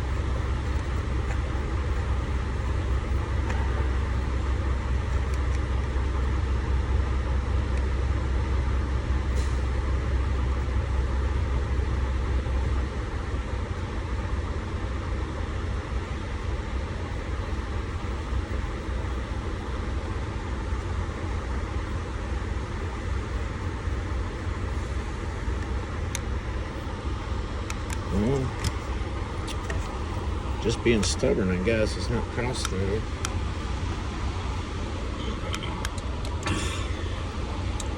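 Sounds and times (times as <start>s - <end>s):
diesel truck engine idling: 0.0s - 37.9s.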